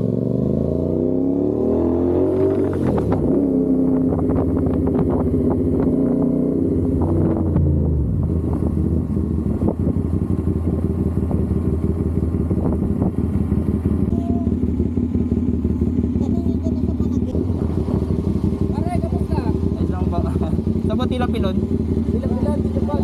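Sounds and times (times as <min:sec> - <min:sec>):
motorcycle engine running: 0:00.0 - 0:23.0.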